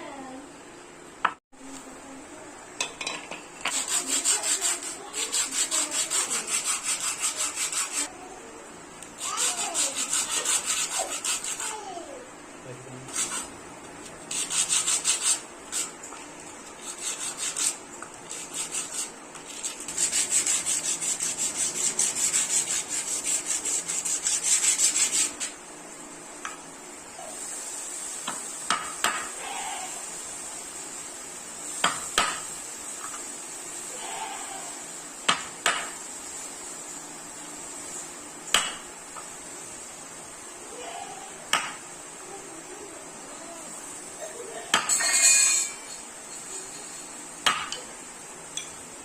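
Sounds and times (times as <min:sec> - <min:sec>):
wood sanding strokes: 0:03.7 - 0:08.1, 0:09.2 - 0:12.0, 0:13.0 - 0:13.6, 0:14.2 - 0:16.0, 0:16.6 - 0:25.6.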